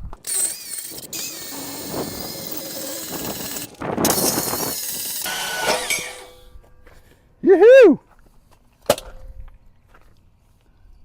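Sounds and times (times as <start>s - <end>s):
power tool cutting steel: 0.1s - 6.5s.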